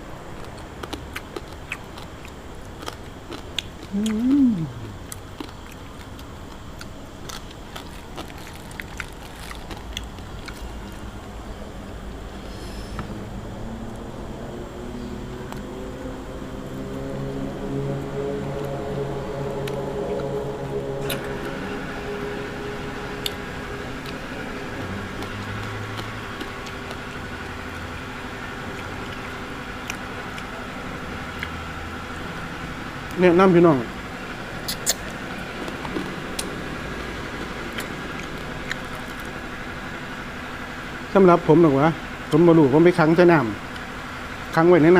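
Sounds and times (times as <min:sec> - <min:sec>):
low steady rumble: 0:00.0 - 0:44.9
steady background hum: 0:00.0 - 0:44.9
person chewing and biting: 0:00.3 - 0:11.2, 0:21.0 - 0:21.6, 0:23.2 - 0:23.4, 0:24.0 - 0:27.9, 0:28.5 - 0:30.6, 0:34.6 - 0:39.4
small clicks and crunches: 0:07.2 - 0:10.7.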